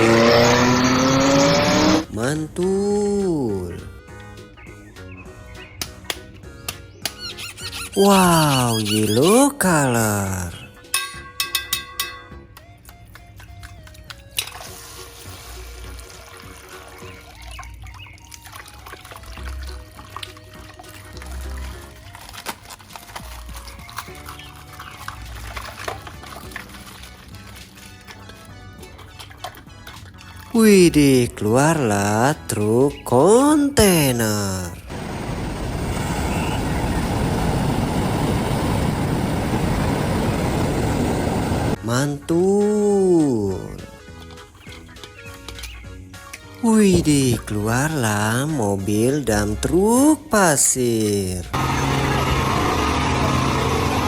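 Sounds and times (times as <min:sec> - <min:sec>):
background music with bass: 0:00.0 - 0:35.0, 0:41.7 - 0:54.0
truck engine running: 0:34.9 - 0:41.8, 0:51.5 - 0:54.0.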